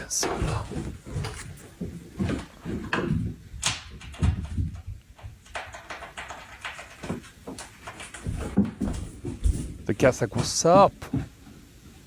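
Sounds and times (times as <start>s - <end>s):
knocks and thumps behind a door: 0.1s - 11.4s.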